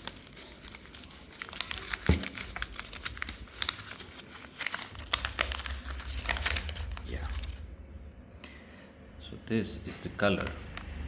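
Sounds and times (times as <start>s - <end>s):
plastic packaging crinkling: 0.0s - 7.7s.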